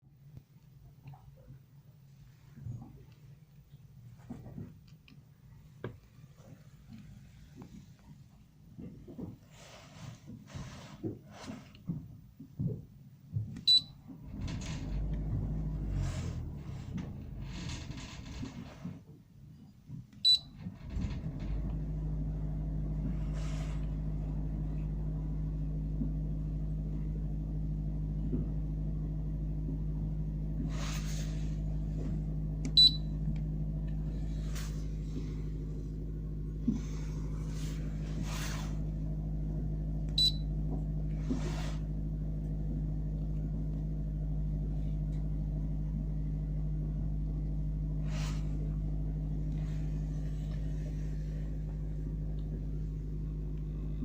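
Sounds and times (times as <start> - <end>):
machinery low hum: 13.3 - 54.0.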